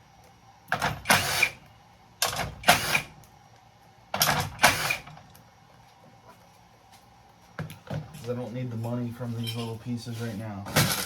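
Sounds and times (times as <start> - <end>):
power drill whining: 1.0 - 1.6, 2.6 - 3.1.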